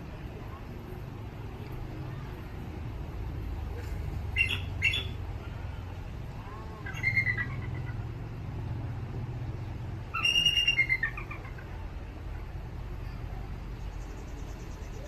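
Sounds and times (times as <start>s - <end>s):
eagle piping chattering calls: 4.3s - 5.2s, 6.8s - 8.0s, 10.1s - 11.8s.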